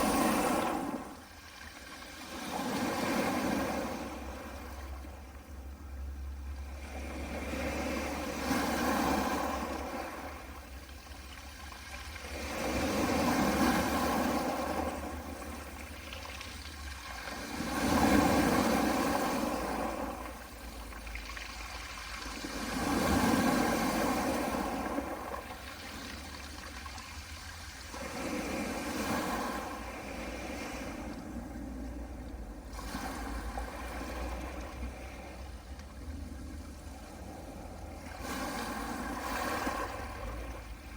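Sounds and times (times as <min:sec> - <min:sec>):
waves washing onto pebble beach: 0:00.0 - 0:04.8, 0:07.0 - 0:10.6, 0:11.2 - 0:31.7, 0:36.4 - 0:40.9.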